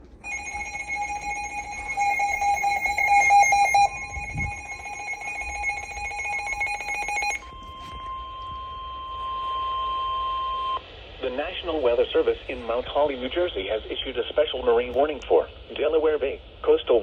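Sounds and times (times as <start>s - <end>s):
shrill pulsing electronic alarm: 0.0s - 10.8s
steady low alarm tone: 0.0s - 12.9s.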